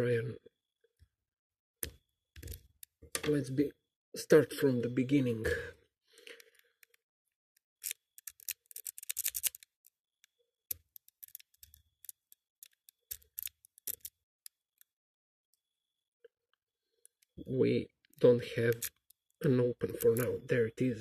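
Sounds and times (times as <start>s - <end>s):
lock pick clicking and scraping: 7.6s - 14.9s, 18.7s - 19.4s.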